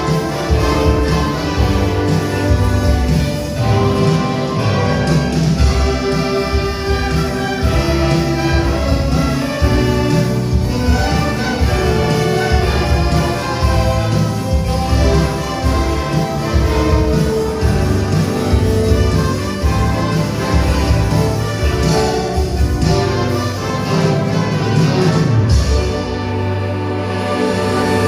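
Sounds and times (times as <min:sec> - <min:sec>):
orchestra playing: 0:00.0 - 0:28.0.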